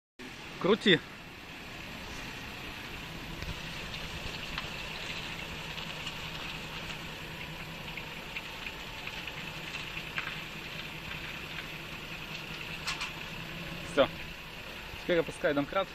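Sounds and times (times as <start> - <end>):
steady low hum: 0.2 - 15.9
suspension creaking and clicking: 12.3 - 13.3.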